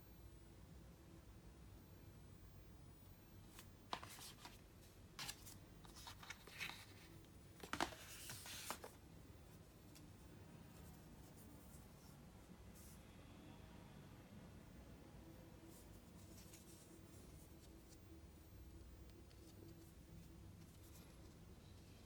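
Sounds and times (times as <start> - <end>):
packaging clicks and rustles: 3.9 - 4.6, 5.2 - 9.0.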